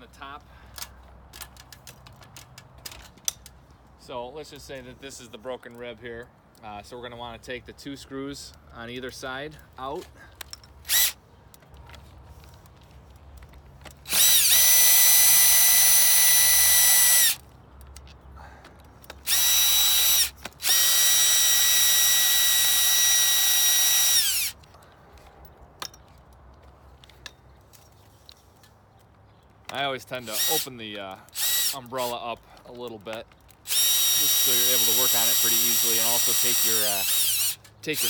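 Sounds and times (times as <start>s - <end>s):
power drill whining: 10.9s - 11.2s, 14.1s - 17.4s, 19.2s - 24.6s, 30.2s - 30.7s, 31.3s - 32.1s, 33.7s - 38.0s.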